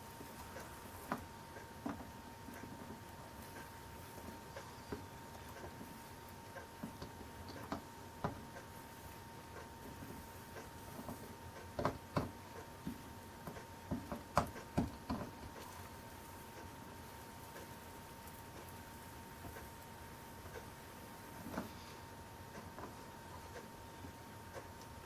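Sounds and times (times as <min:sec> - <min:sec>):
soldering iron tapping on glass: 0:11.0 - 0:15.6.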